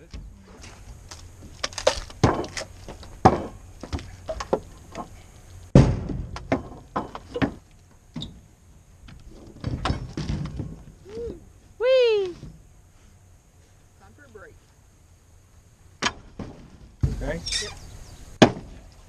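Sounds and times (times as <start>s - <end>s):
wooden boards knocking: 1.9s - 5.1s, 5.8s - 7.6s.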